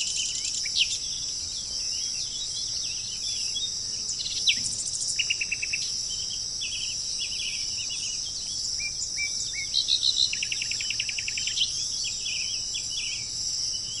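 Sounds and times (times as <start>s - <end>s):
insects chorus: 0.0s - 14.0s
songbirds chirping: 0.0s - 14.0s.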